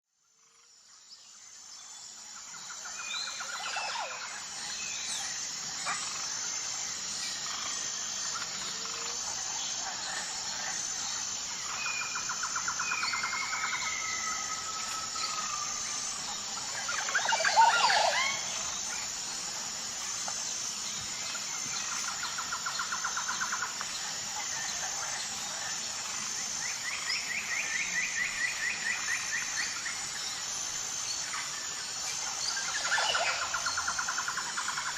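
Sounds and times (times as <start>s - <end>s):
high buzzing drone: 0.9s - 34.9s
tropical birds calling: 7.3s - 19.1s.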